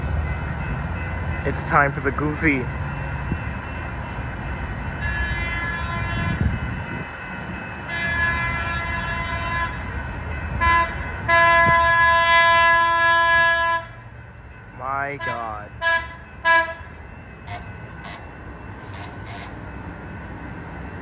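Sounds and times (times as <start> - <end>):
multi-note train horn blasts: 5.0 - 6.4, 7.9 - 9.8, 10.6 - 14.0, 15.2 - 16.9, 17.5 - 18.3.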